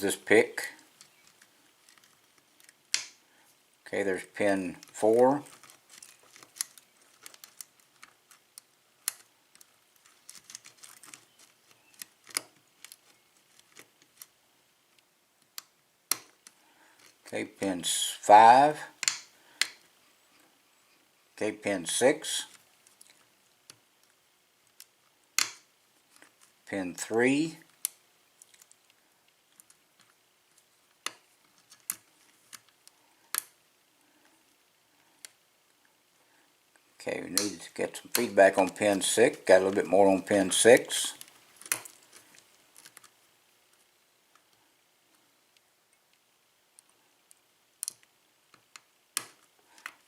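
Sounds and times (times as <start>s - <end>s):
lock pick clicking and scraping: 5.6s - 14.3s.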